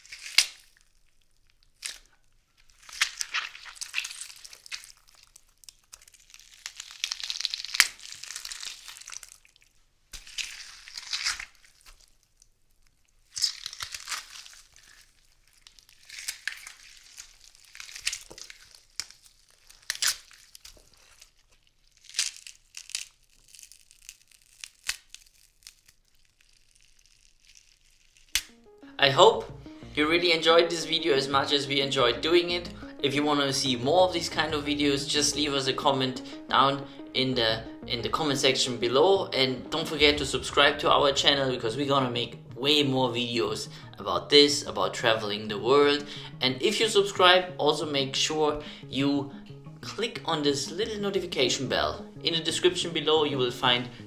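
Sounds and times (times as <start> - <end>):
watermelon crunching and tearing: 0.0 - 12.4, 13.1 - 28.5.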